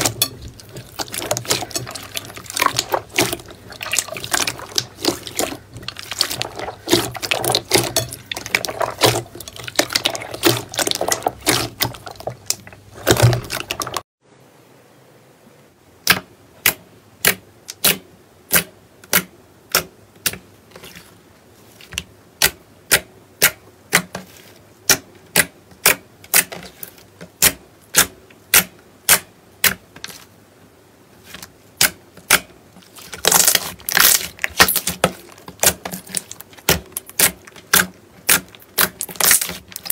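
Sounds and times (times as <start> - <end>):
slime squishing and crackling: 0.0 - 14.1, 31.8 - 39.9.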